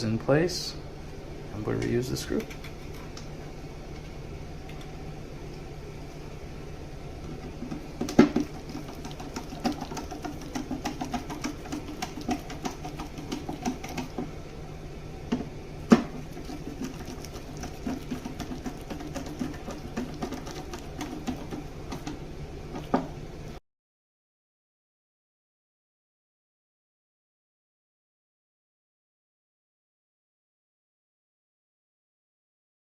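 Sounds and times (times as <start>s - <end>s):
steady low hum: 0.0s - 23.6s.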